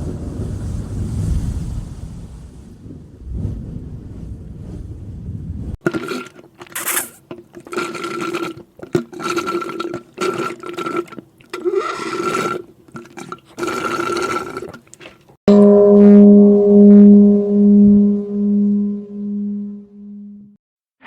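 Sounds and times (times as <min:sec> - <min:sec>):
slurping through a straw: 0:05.8 - 0:15.4.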